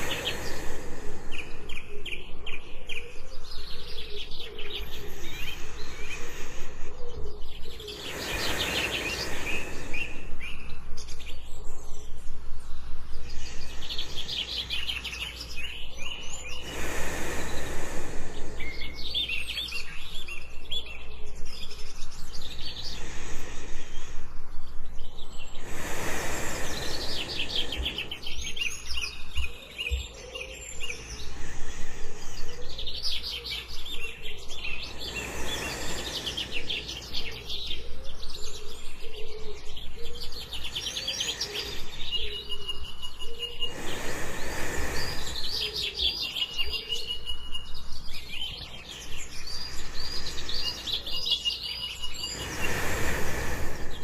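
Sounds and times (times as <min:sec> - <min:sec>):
soft breathing whoosh: 0:00.0 - 0:02.7, 0:03.4 - 0:42.6, 0:43.2 - 0:54.0
steady low background: 0:00.0 - 0:29.8
jungle birds chirping: 0:00.0 - 0:54.0.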